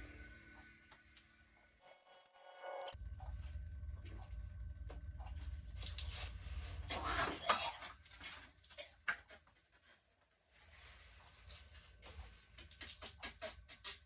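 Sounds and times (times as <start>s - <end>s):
low hum: 0.0s - 8.5s.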